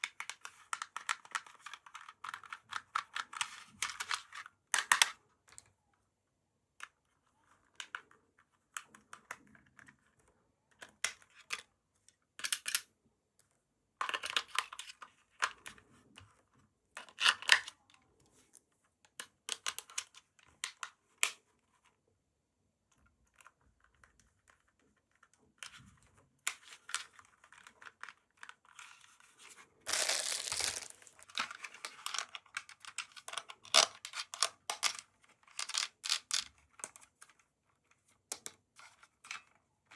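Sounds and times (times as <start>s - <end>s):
plastic packaging crinkling and tearing: 29.9s - 31.5s.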